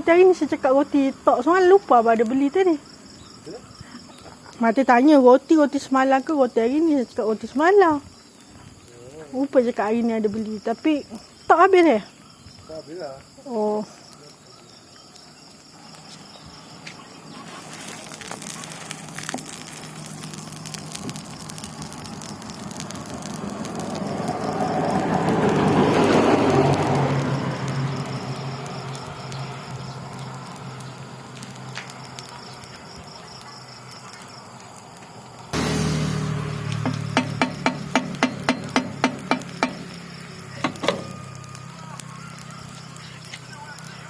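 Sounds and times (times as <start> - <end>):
vehicle passing by rumbling: 18.4 - 32.7, 34.4 - 42.5.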